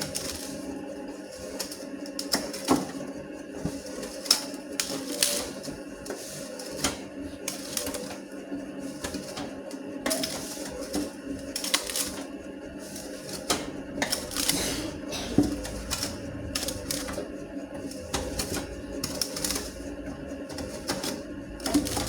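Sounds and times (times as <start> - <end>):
dough mixer motor hum: 0.0 - 22.0
clicking and knocking: 13.4 - 17.3.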